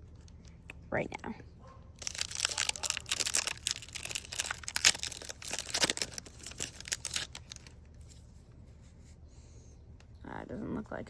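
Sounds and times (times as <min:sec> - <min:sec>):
foil wrapper tearing and crinkling: 0:02.0 - 0:07.8.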